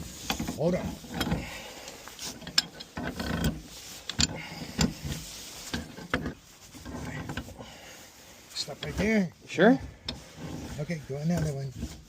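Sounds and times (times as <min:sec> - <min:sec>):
metallic clicks and knocks: 0:02.4 - 0:05.1.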